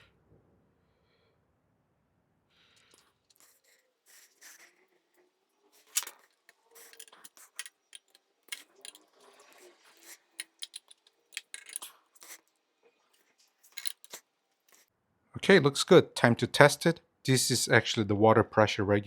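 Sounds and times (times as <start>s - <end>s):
small metal parts clinking: 5.8s - 12.4s, 13.6s - 14.8s.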